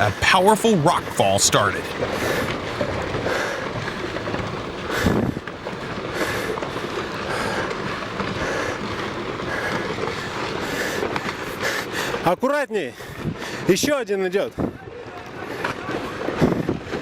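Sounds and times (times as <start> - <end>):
rocks tumbling and clattering: 0.0 - 12.5.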